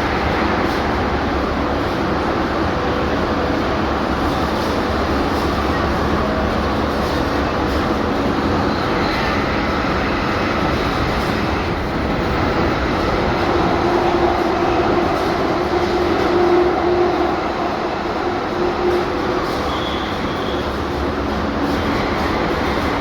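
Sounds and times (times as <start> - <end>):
train wheels rumbling on rail: 0.0 - 23.0
high squeal: 18.8 - 20.8.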